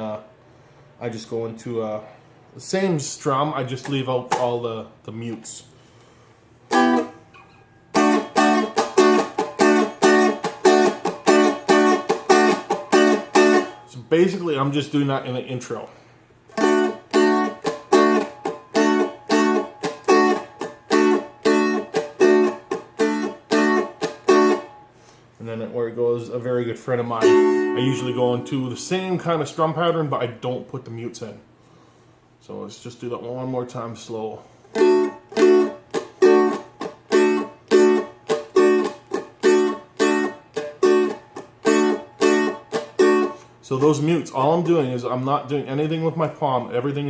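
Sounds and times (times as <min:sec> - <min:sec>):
acoustic guitar strumming: 0:06.7 - 0:14.0, 0:16.5 - 0:24.9, 0:27.0 - 0:29.0, 0:34.7 - 0:44.8
dulcimer strummed: 0:27.1 - 0:28.8.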